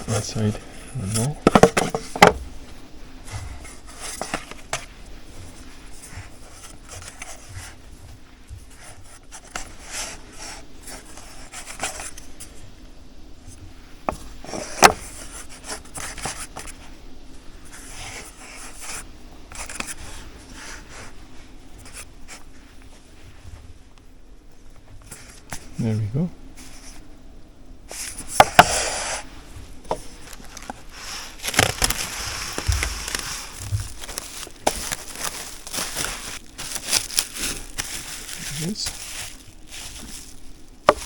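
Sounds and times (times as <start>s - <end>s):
hands handling dough: 27.9s - 41.0s.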